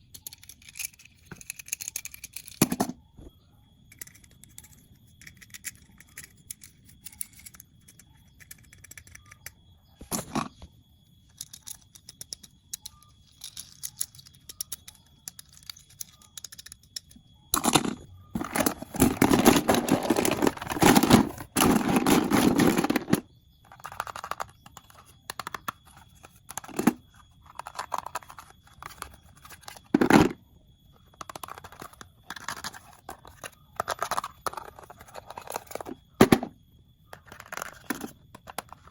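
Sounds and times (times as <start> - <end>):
packaging rustling: 18.4 - 23.2.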